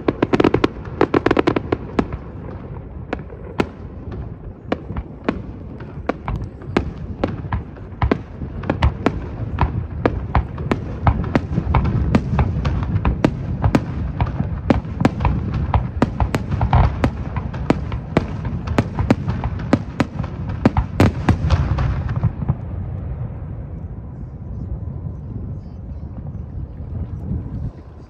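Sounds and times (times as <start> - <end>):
low rumble: 21.2 - 28.0.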